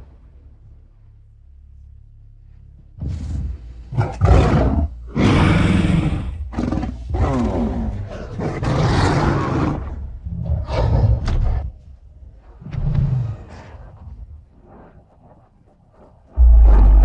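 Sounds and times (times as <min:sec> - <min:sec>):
giant ape roars and grunts: 0:04.0 - 0:11.6, 0:16.4 - 0:17.0.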